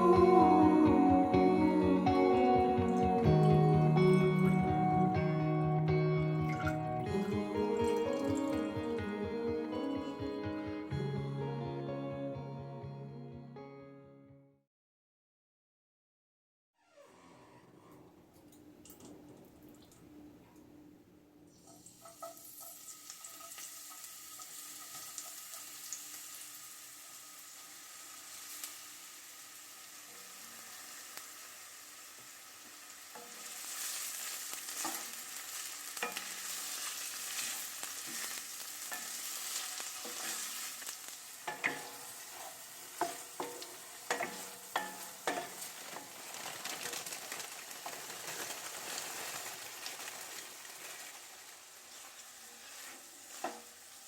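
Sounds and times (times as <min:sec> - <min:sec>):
food sizzling in frying pan: 0:21.6 - 0:54.0
utensil tapping pan: 0:36.0 - 0:36.5, 0:41.4 - 0:46.3.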